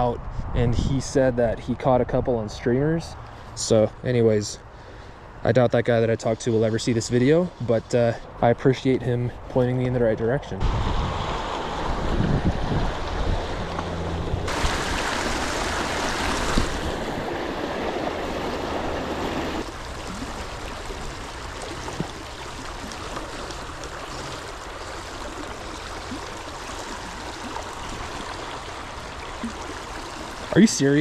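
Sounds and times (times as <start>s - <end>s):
river water flowing: 10.6s - 31.0s.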